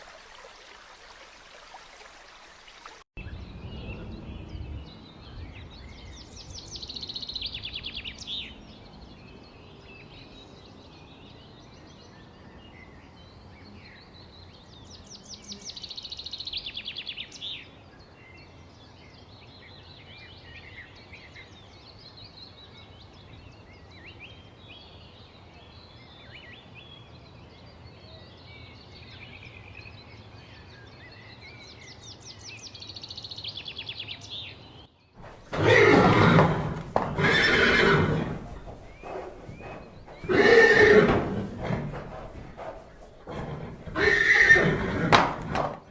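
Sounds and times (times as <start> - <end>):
birds chirping: 23.0 - 45.9.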